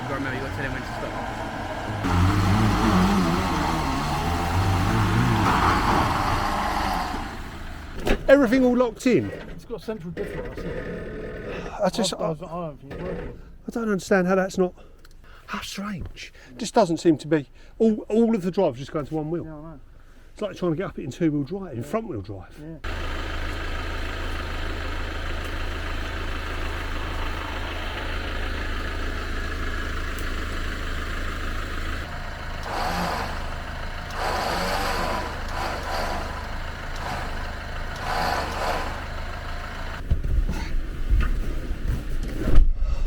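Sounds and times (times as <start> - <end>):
off-road vehicle engine under load: 0.0 - 13.7, 22.8 - 41.1.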